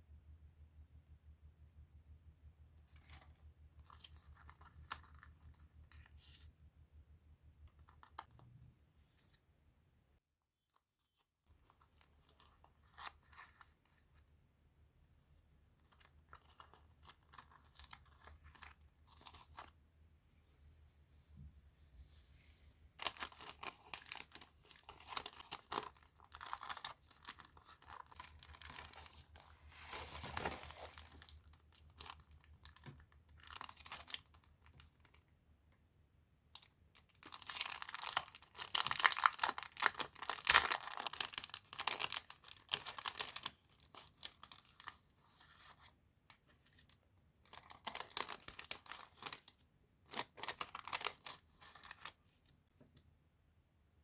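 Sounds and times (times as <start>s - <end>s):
packaging crinkling and tearing: 15.8s - 19.7s, 23.0s - 35.2s, 36.6s - 45.9s, 46.6s - 52.5s.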